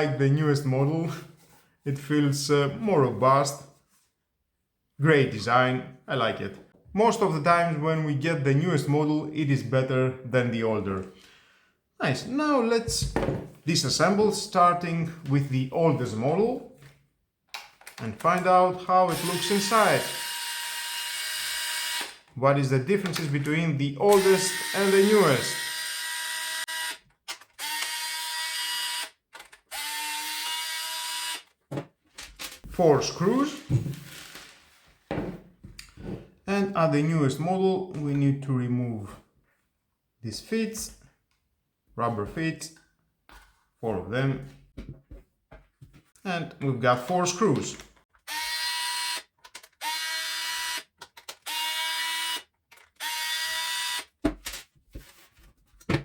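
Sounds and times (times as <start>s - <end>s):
electric screwdriver motor whining: 19.1s - 22.2s, 24.1s - 27.0s, 27.6s - 31.5s, 48.3s - 54.1s.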